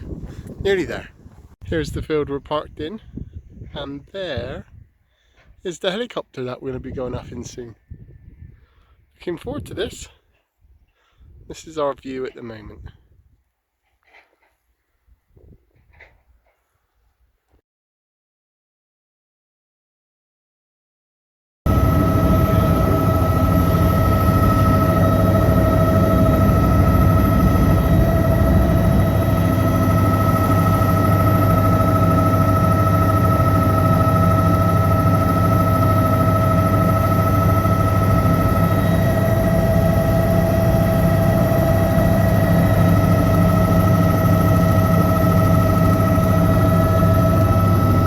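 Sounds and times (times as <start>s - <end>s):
helicopter engine and rotor noise: 21.7s - 48.0s
high whine: 21.7s - 48.0s.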